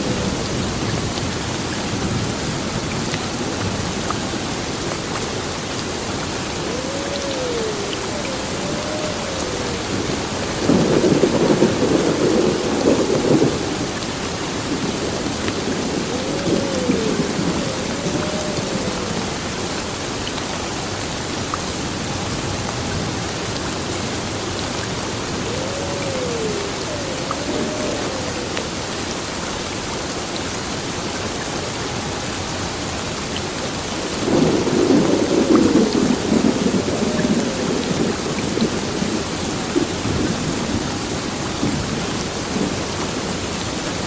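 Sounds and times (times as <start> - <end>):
heavy rain falling: 0.0 - 44.0
thunder rumbling: 6.4 - 20.0, 21.8 - 29.0, 34.0 - 43.4.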